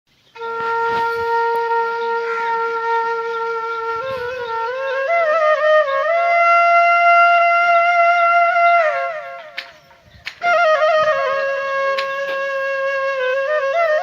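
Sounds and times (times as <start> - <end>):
solo flute-like wind instrument: 0.3 - 14.0.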